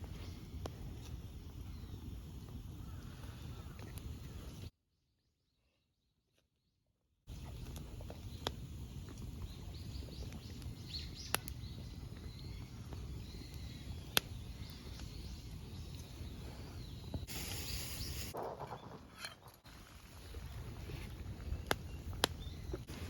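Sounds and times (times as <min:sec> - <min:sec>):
wood fire rumbling: 0:00.0 - 0:04.7, 0:07.3 - 0:23.0
rustling hiss: 0:07.4 - 0:21.4
wood popping: 0:17.1 - 0:20.4.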